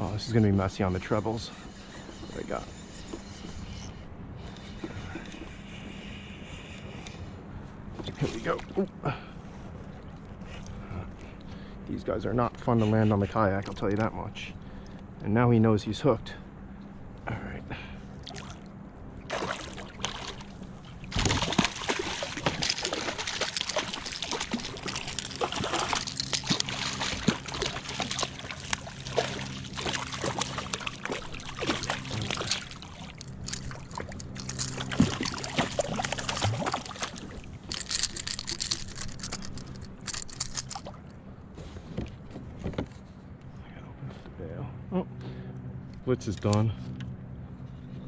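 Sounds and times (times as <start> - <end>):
fish splashing in water: 19.3 - 39.3.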